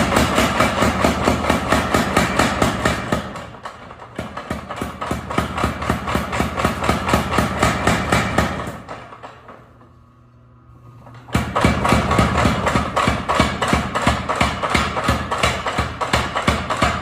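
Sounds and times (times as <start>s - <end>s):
low machine hum: 8.8s - 16.1s
mechanical forging hammer striking: 11.3s - 17.0s.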